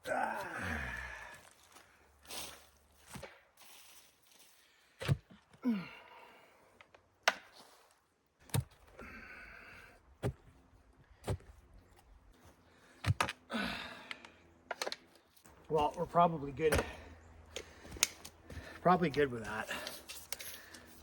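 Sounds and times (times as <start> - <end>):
person grunting: 0.0 - 1.3, 5.6 - 6.0, 13.5 - 14.1
heavy breathing: 0.2 - 2.0, 16.8 - 18.9
digging tool striking soil: 5.0 - 5.3.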